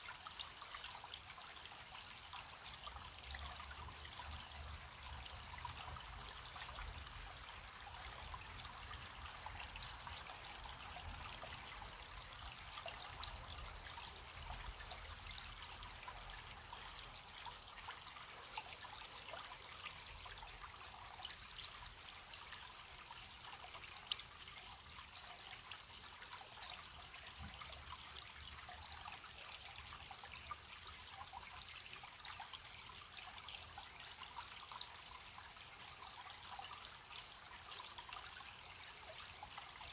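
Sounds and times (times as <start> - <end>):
stream trickling over stones: 0.0 - 39.9
crickets chirping: 1.5 - 23.1, 23.8 - 31.5.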